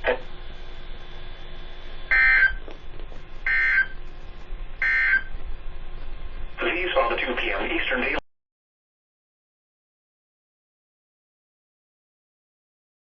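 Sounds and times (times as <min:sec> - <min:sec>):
faint radio hiss: 0:05.4 - 0:08.2.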